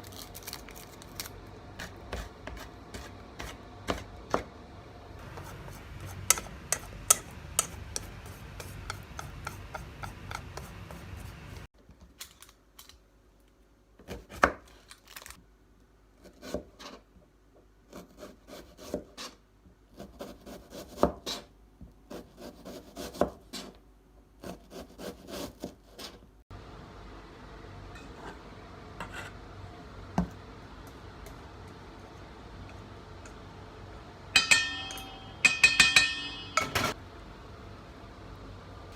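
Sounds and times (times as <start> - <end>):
knocks and taps of food preparation: 30.1 - 30.4.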